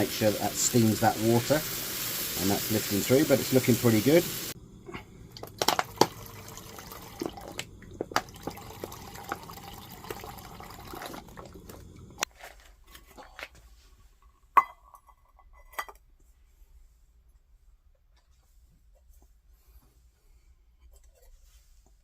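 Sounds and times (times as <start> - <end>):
food sizzling in a hot pan: 0.0 - 4.6.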